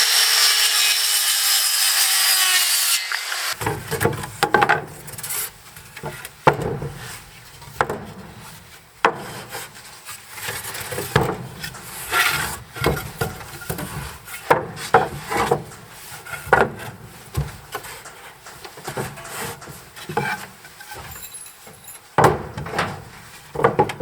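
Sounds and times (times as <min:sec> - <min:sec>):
wood scraping and rubbing: 0:10.4 - 0:21.2
wooden knocks and clatters: 0:18.8 - 0:24.0.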